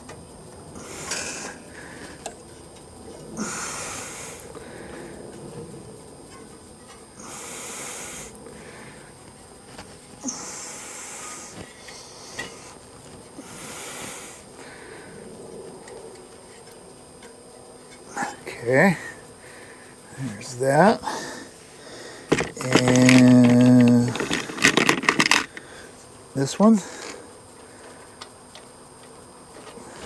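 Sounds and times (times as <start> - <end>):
person breathing close: 0.8 - 2.3, 3.3 - 5.3, 7.2 - 9.2, 10.2 - 12.8, 13.4 - 15.3, 18.1 - 20.1, 21.0 - 26.0
small parts clicking: 22.3 - 25.7.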